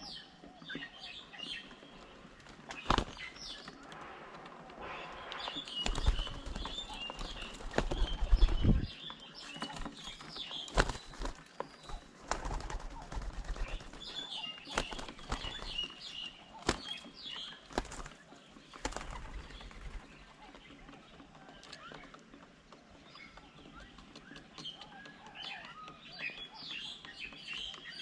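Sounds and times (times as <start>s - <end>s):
bird wings flapping: 1.6s - 21.0s
high bird chirping: 4.9s - 18.0s.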